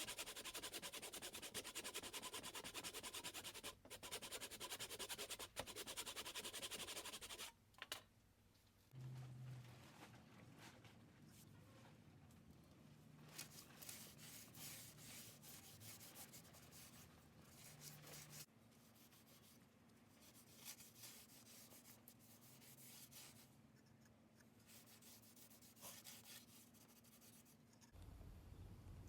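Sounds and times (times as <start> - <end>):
low steady hum: 27.7 - 29.0.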